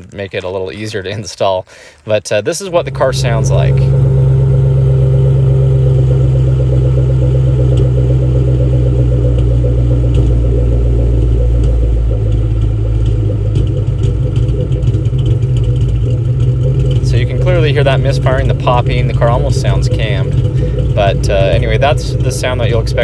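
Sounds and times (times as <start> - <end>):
car engine misfiring and popping: 2.6 - 23.0.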